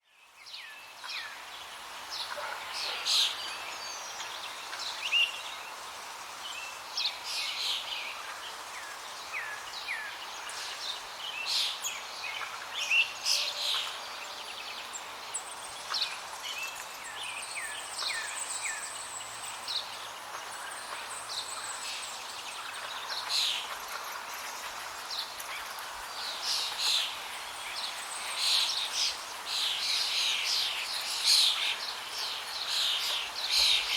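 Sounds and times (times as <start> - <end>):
birds chirping and calling: 7.0 - 33.9.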